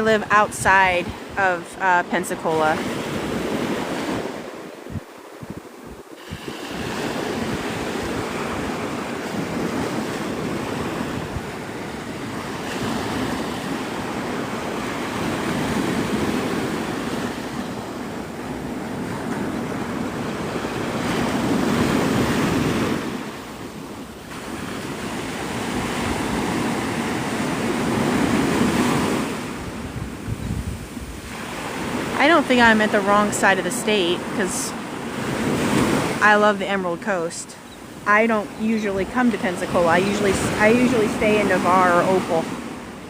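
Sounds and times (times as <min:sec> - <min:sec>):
wind on microphone: 0:00.0 - 0:33.3
surf washing onto beach: 0:00.0 - 0:43.0.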